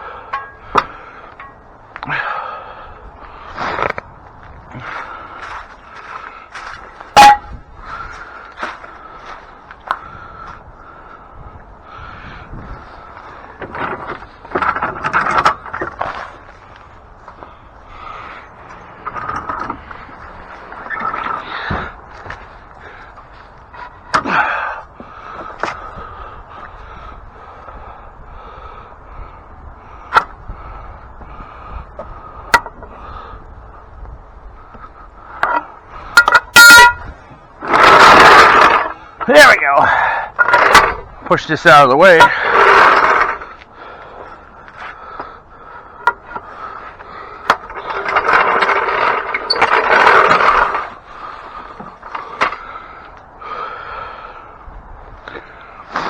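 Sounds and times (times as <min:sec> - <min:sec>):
casters scraping and squealing: 0:07.0 - 0:08.1, 0:18.2 - 0:24.4, 0:34.8 - 0:43.7, 0:45.8 - 0:52.7.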